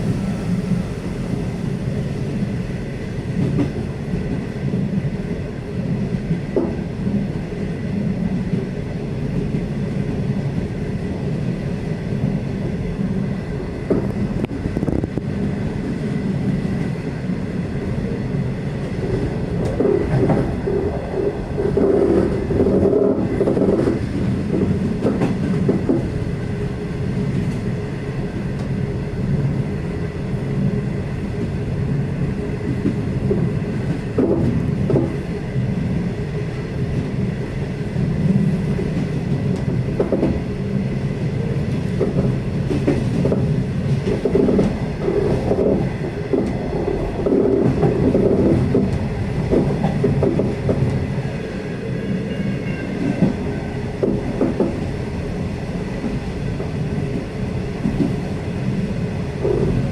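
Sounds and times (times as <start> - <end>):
faint high whine: 0.0 - 2.6
train wheels rumbling: 0.0 - 59.9
click over rails: 13.8 - 16.0, 18.8 - 26.1, 32.6 - 35.2, 38.2 - 40.5, 41.7 - 51.1, 54.0 - 54.9, 56.0 - 58.4, 59.4 - 59.9.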